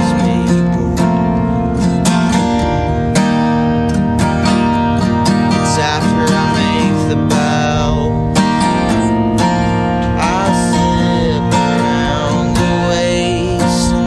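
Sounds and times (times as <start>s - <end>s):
acoustic guitar strumming: 0.0s - 14.0s.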